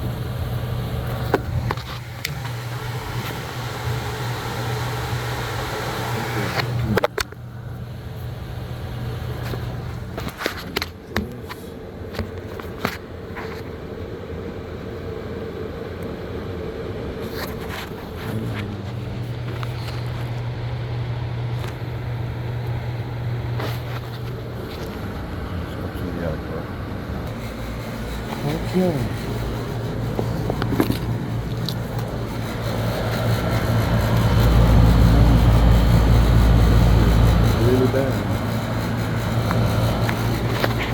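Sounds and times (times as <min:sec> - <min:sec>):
air conditioner humming: 0:00.0 - 0:40.9
deep low hum: 0:18.1 - 0:40.9.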